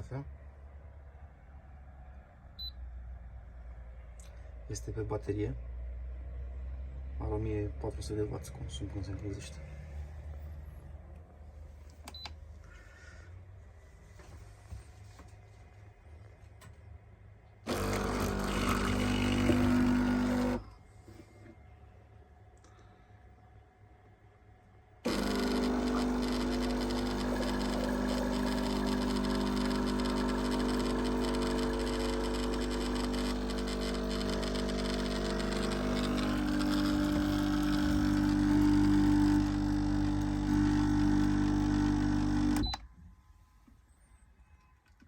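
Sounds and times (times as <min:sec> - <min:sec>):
espresso machine pump buzzing: 0:17.7 - 0:20.6, 0:25.1 - 0:42.8.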